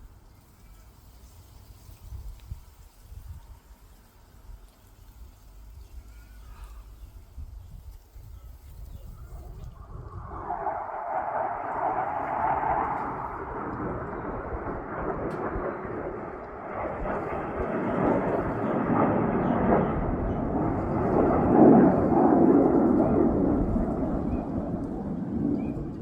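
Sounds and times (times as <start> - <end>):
fighter jets roaring past: 9.2 - 26.0.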